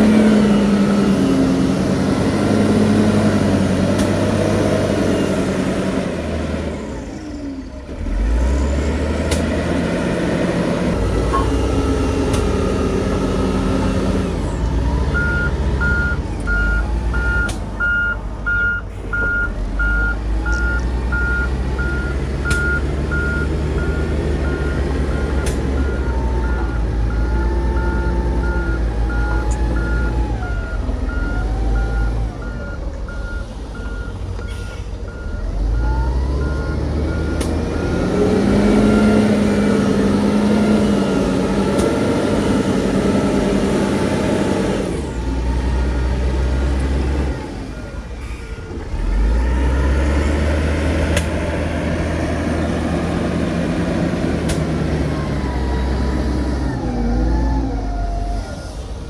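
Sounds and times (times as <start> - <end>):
diesel engines running: 0.0 - 59.0
engine revving: 0.0 - 59.0
reversing alarm beeping: 11.2 - 41.4.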